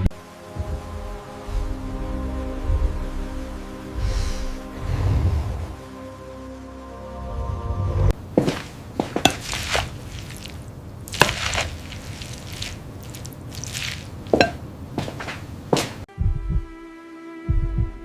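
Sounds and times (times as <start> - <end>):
rustling swishes: 8.2 - 16.1.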